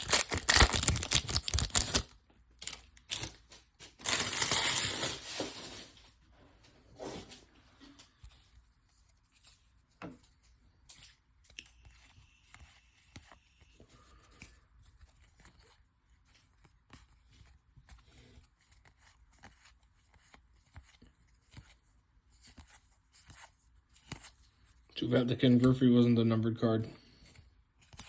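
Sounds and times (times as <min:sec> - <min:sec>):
cards rustling and clicking: 0:00.0 - 0:05.8, 0:07.9 - 0:26.1, 0:27.2 - 0:28.0
wrapper crinkling: 0:00.0 - 0:06.0.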